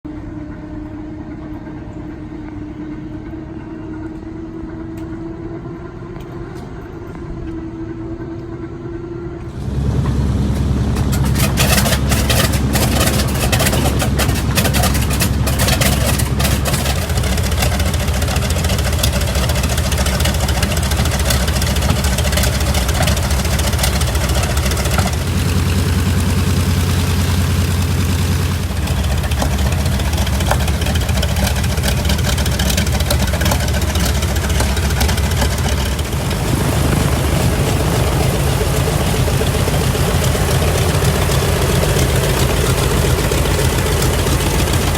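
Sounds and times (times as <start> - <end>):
radial engine running loud: 0.1 - 44.9
starter whine rising: 9.4 - 44.9.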